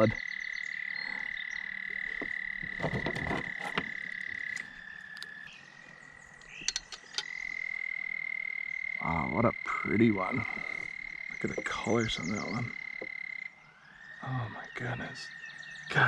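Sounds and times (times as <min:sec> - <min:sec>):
frog trilling: 0:00.0 - 0:05.5, 0:06.5 - 0:14.8
clicks and knocks: 0:02.1 - 0:05.3.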